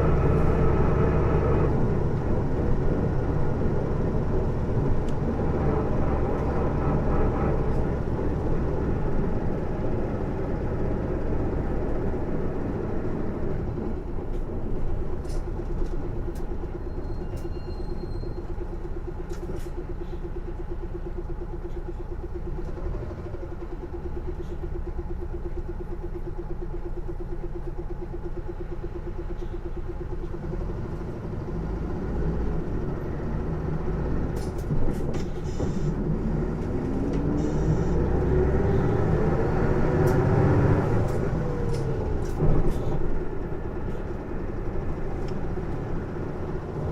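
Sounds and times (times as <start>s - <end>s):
bus engine rumble: 0.0s - 46.9s.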